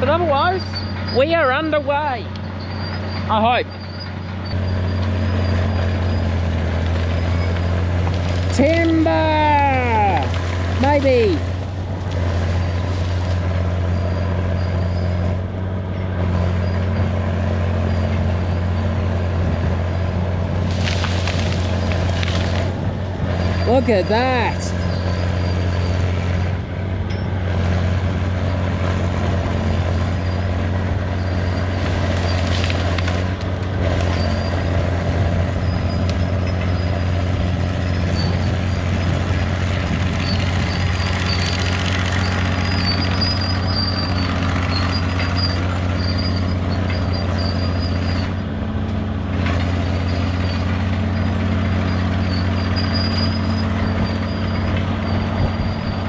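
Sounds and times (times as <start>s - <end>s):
diesel engine running: 0.0s - 56.0s
high squeal: 0.4s - 6.5s, 13.8s - 17.0s, 23.3s - 26.2s, 29.9s - 32.6s, 34.0s - 39.2s, 40.2s - 48.5s, 49.7s - 56.0s.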